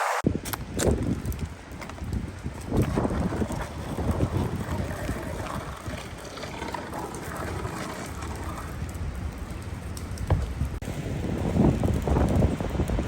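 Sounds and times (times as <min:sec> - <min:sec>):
fire crackling and popping: 0:00.2 - 0:13.0
wind rushing on microphone: 0:00.2 - 0:13.0.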